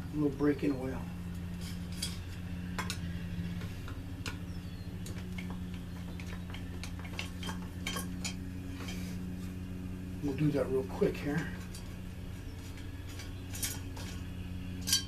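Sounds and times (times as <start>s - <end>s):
steady low hum: 0.0s - 15.0s
small metal parts clinking: 12.7s - 15.0s.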